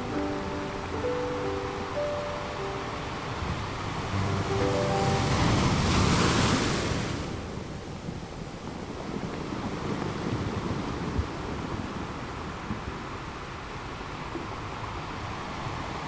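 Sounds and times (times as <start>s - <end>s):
wave washing in: 0.0s - 12.6s
surf rumble: 0.0s - 16.0s.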